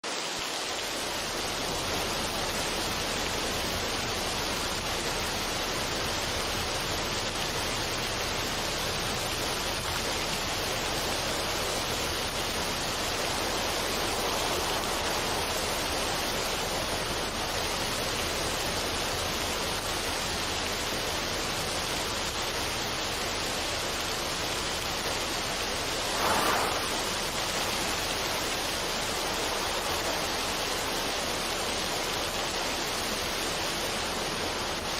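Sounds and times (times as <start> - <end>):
waterfall rushing over rocks: 0.0 - 34.9
water splashing: 7.7 - 20.8, 21.4 - 33.6.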